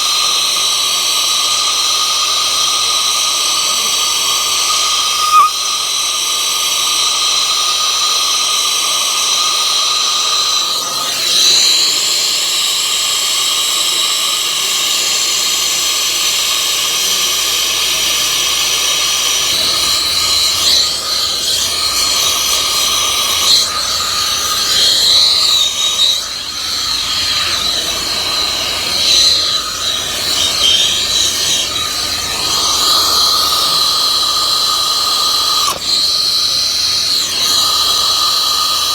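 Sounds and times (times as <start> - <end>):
torch flame hissing: 0.0 - 8.1, 17.0 - 38.9.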